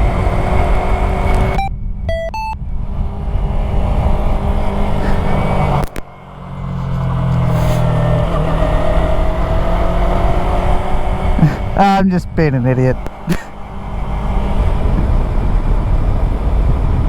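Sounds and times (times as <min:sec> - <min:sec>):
motorcycle engine running: 0:00.0 - 0:17.0
short electronic beeps: 0:01.4 - 0:02.6
wind noise on microphone: 0:07.3 - 0:17.0.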